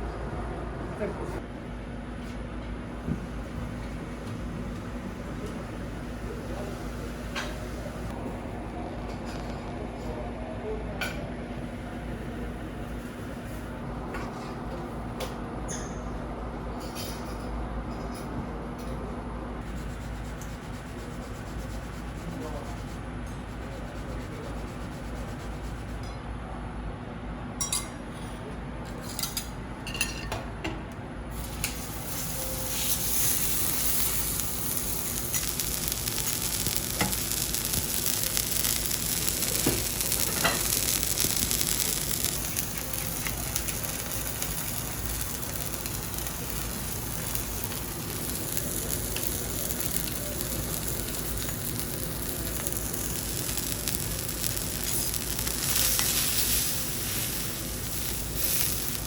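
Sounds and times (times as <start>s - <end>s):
food sizzling on griddle: 31.3s - 59.0s.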